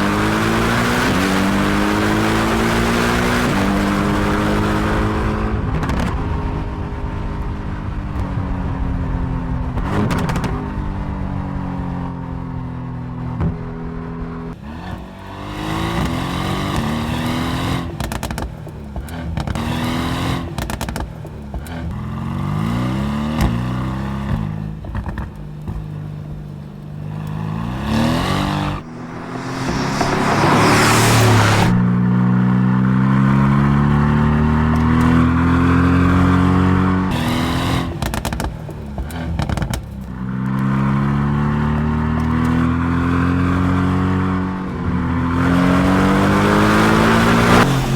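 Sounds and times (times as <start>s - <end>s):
car engine revving through gears: 0.0s - 7.1s, 14.5s - 47.9s
loud rushing burst: 27.6s - 32.2s.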